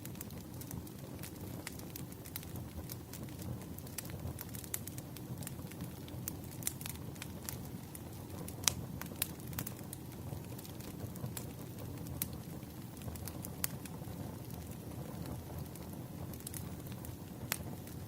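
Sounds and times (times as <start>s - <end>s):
wood fire crackling and popping: 0.0s - 18.0s.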